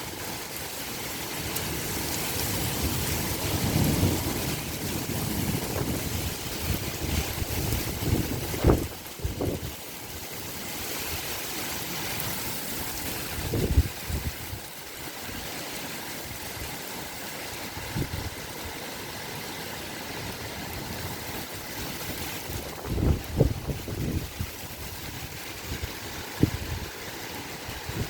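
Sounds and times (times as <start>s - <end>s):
strong gusty wind: 2.2s - 9.7s, 12.9s - 14.7s, 17.7s - 18.8s, 20.6s - 28.0s
wind buffeting microphone: 3.3s - 9.7s, 13.2s - 14.7s, 17.8s - 18.5s, 20.9s - 28.0s.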